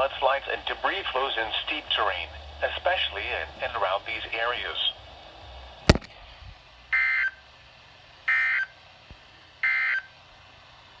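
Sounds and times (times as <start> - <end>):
sharp click: 5.9 - 6.1.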